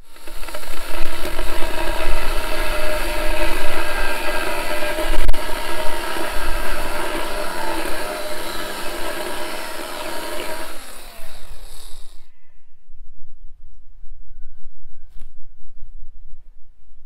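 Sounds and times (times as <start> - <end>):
cordless chainsaw motor whine: 0.0 - 12.3.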